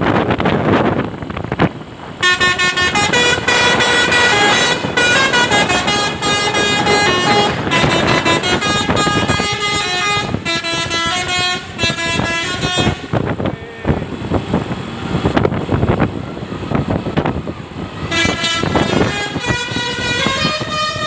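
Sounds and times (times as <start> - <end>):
musical bus air horn: 2.2 - 13.4, 18.0 - 21.0.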